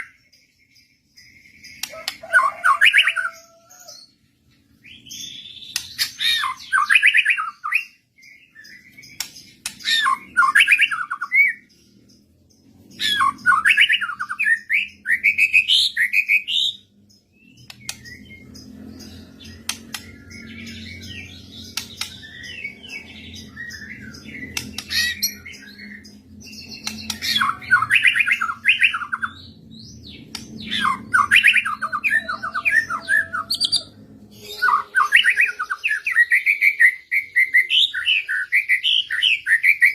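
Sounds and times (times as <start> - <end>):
bird whistling and squawking: 30.6 - 39.9.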